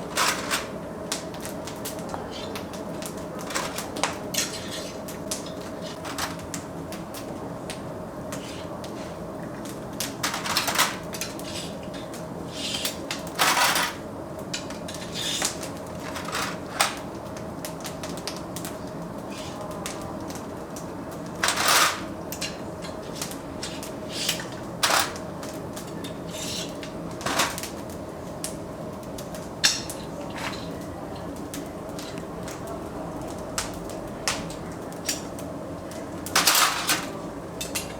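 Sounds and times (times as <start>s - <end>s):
utensils and dishes clinking: 0.1s - 0.7s, 2.0s - 6.5s, 10.1s - 14.0s, 21.3s - 27.8s, 29.3s - 32.2s, 36.2s - 37.9s.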